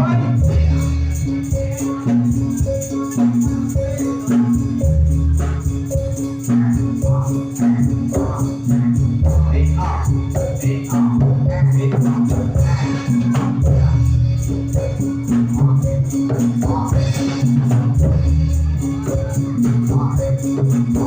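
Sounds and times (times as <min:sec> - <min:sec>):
heavy bass notes: 0:00.0 - 0:21.0
rattling percussion: 0:00.0 - 0:21.0
repeating melody: 0:00.0 - 0:21.0
steady drum beat: 0:00.0 - 0:21.0.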